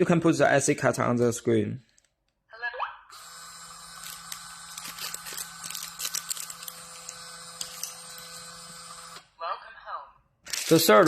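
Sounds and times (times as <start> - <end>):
smart lock motor whirring: 3.1 - 9.3.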